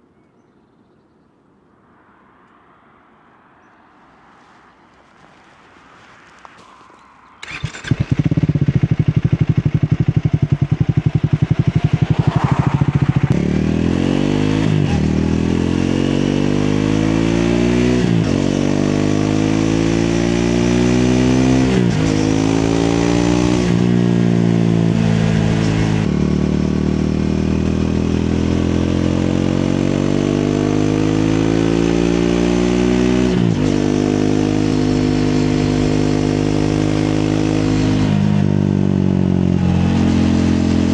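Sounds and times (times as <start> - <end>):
motorcycle engine idling: 7.4 - 13.3
motorcycle accelerating through gears: 7.4 - 40.9.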